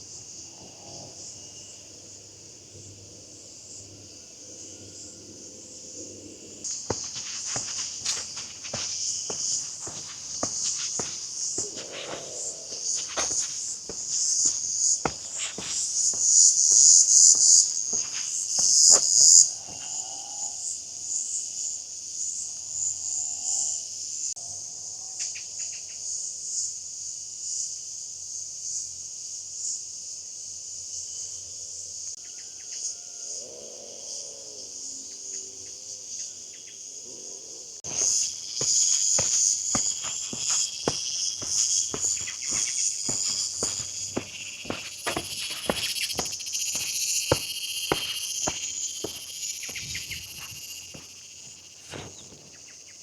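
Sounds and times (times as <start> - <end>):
insects chirring: 0.0 - 24.3, 32.3 - 53.0
footsteps on ground: 6.7 - 20.0, 37.9 - 52.6.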